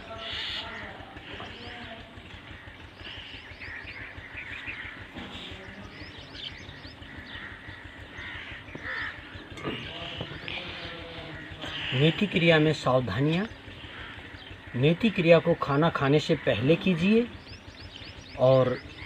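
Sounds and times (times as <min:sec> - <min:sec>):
birds chirping: 0:00.0 - 0:19.0
harsh bird calls: 0:00.0 - 0:19.0.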